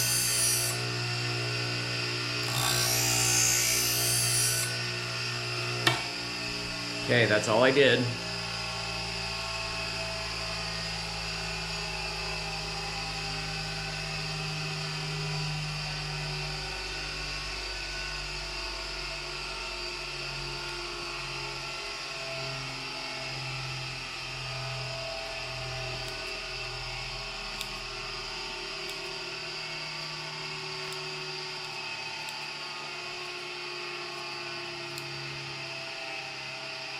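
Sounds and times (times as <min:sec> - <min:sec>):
sharpening machine motor running: 0:00.0 - 0:07.0, 0:22.2 - 0:36.8.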